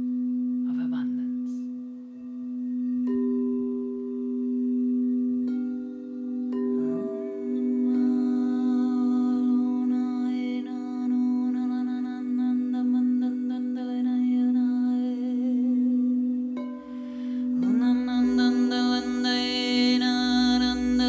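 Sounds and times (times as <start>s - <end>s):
crystal singing bowl: 0.0s - 21.0s
person humming a held note: 6.8s - 21.0s.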